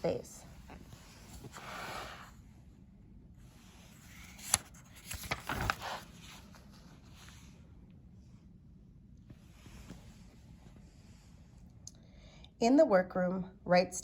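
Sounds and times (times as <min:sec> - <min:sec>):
paper rustling: 0:03.8 - 0:07.6.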